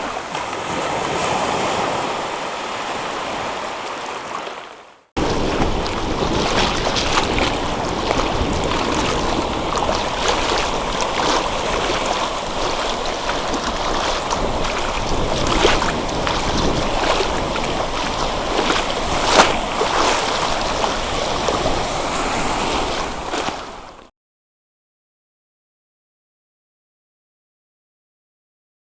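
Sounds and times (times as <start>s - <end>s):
sea waves breaking: 0.0s - 24.1s
sharp water splashes: 5.2s - 24.1s.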